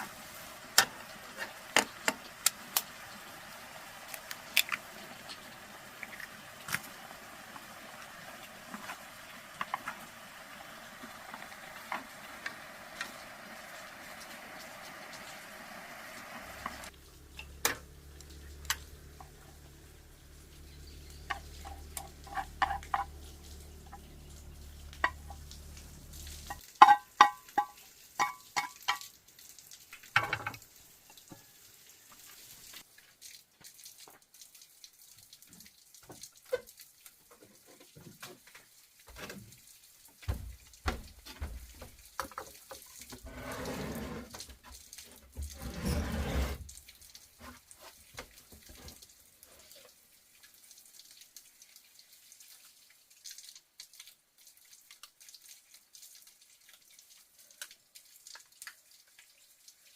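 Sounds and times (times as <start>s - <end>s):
water gushing: 0.0s - 59.9s
dishes clinking: 21.3s - 23.2s.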